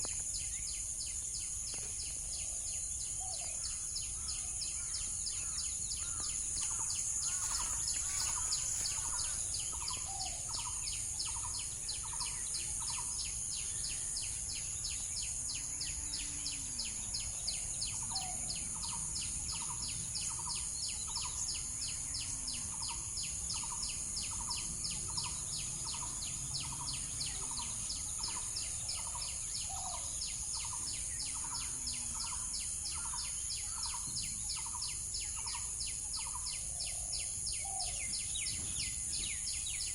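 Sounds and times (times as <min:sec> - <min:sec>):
fast repeating insect chirp: 0:00.0 - 0:37.1
insect buzz: 0:00.0 - 0:39.9
bird calls: 0:01.5 - 0:14.0, 0:23.6 - 0:39.9.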